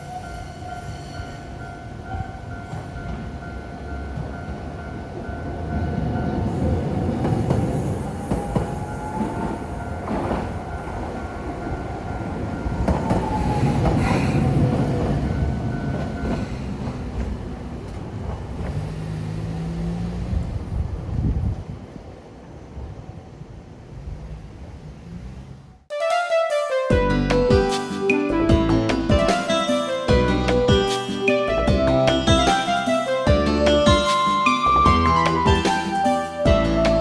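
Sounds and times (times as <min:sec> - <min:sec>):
tram rumble: 0:00.0 - 0:25.9, 0:28.3 - 0:37.0
wheels clacking over rail joints: 0:00.0 - 0:25.9.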